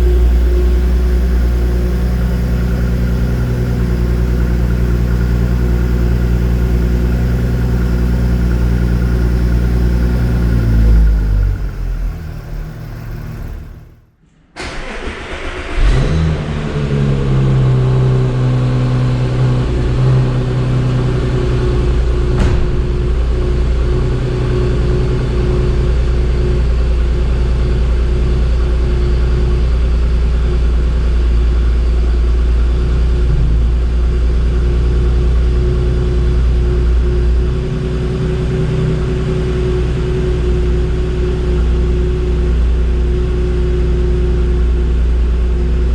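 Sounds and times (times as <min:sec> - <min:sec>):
engine cranking and starting: 0:00.0 - 0:14.0, 0:14.6 - 0:16.5
car engine idling: 0:00.0 - 0:15.6.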